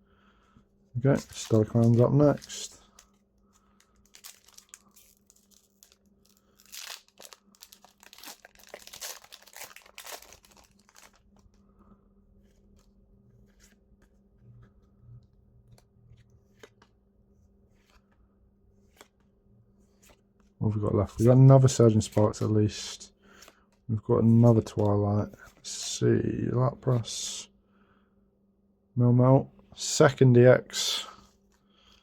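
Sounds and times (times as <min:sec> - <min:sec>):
wrapper tearing and crinkling: 0:03.8 - 0:11.4.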